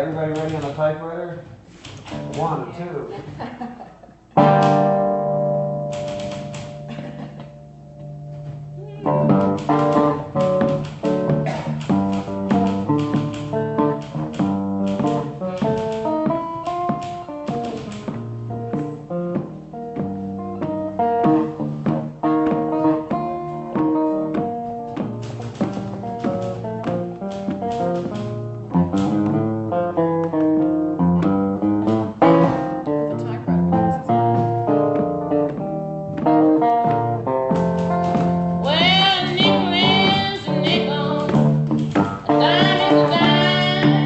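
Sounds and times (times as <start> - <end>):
typewriter keys clacking: 0.2 - 0.8, 5.9 - 7.1, 9.3 - 18.2, 24.9 - 28.4
acoustic guitar fingerpicking blues: 4.2 - 44.0
woman singing with vibrato: 38.6 - 41.4, 42.3 - 44.0.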